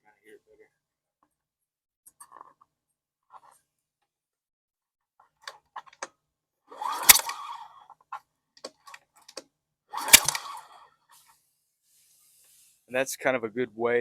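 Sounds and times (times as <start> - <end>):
pull-start cord pulls: 6.7 - 7.8, 8.6 - 10.9.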